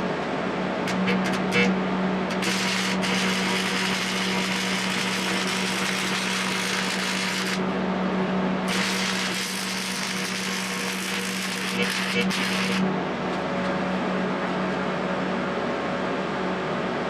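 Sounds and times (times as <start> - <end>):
welder hum: 0.8 - 13.4
welding arc crackling hiss: 0.9 - 1.7, 2.3 - 7.6, 8.7 - 12.8.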